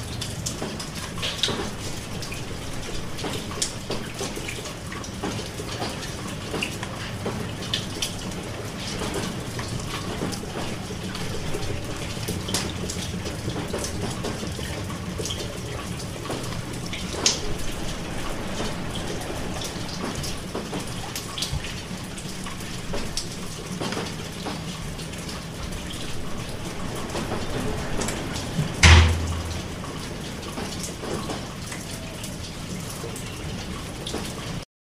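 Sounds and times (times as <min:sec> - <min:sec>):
rain patter: 0:00.0 - 0:34.7
loud thump: 0:28.8 - 0:29.9.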